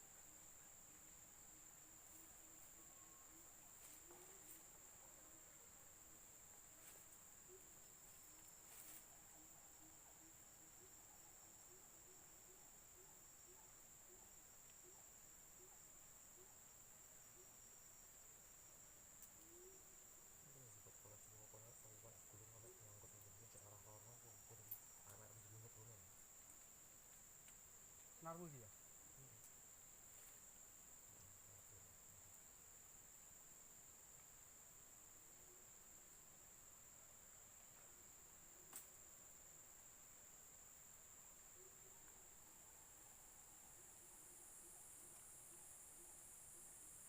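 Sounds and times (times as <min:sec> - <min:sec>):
insects droning: 0:00.0 - 0:47.0
faint clicks: 0:26.4 - 0:28.1.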